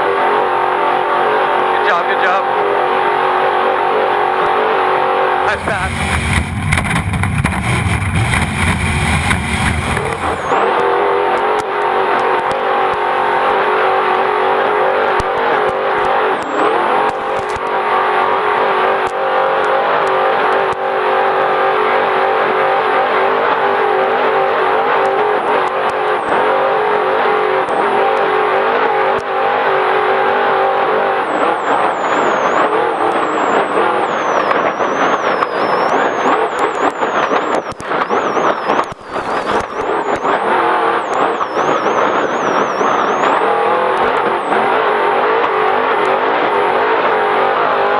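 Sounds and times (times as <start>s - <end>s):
race engine running hard: 0.0s - 47.9s
sharp knocks and ticks: 6.1s - 10.4s.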